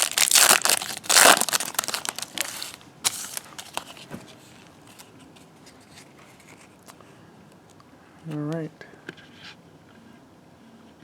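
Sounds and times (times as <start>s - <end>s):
card pack wrapper crinkling and tearing: 0.0s - 4.0s.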